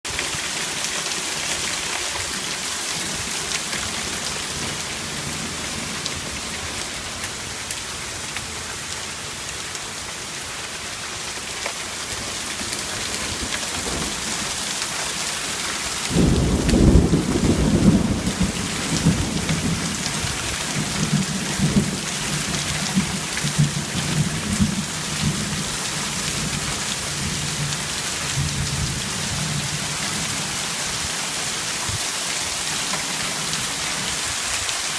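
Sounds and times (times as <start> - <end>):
heavy rain pouring: 0.0 - 34.9
thunder clap: 16.1 - 25.6
rolling thunder rumbles: 16.1 - 30.4.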